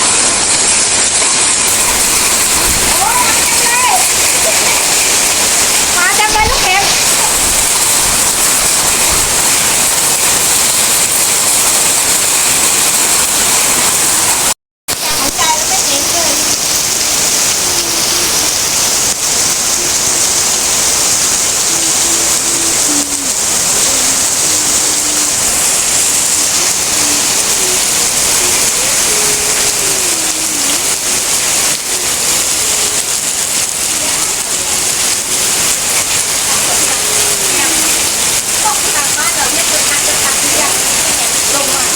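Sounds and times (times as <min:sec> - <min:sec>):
hail and heavy rain pelting: 0:00.0 - 0:41.9.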